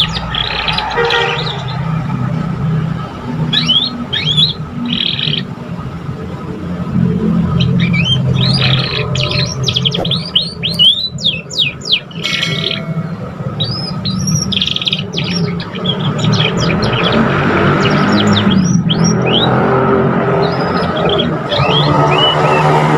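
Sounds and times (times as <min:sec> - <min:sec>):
steady low hum: 0:00.0 - 0:17.2
canary singing: 0:00.0 - 0:22.9.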